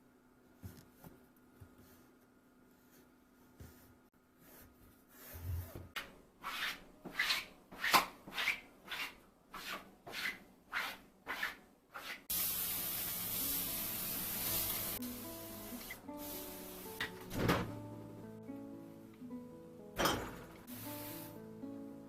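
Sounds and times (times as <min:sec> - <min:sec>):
steady hiss: 0:12.3 - 0:17.2, 0:20.6 - 0:21.5
soft music: 0:12.3 - 0:22.0.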